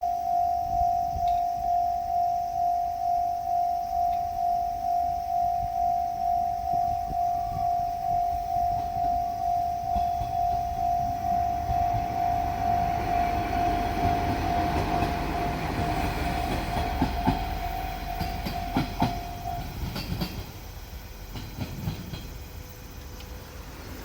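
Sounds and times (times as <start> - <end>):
steady high tone: 0.0 - 20.3
diesel train passing: 4.8 - 24.0
wheels clicking over rail joints: 6.3 - 24.0.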